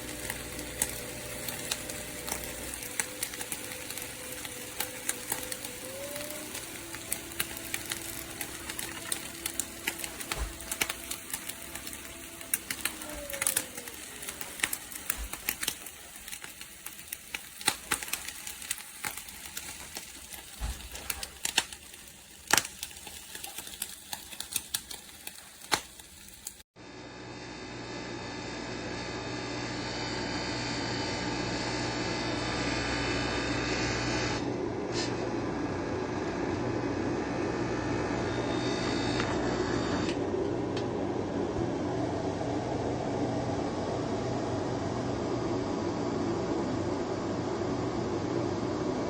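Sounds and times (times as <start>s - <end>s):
crackling clicks: 0.0s - 26.6s
coffee machine motor whirring: 0.0s - 41.1s.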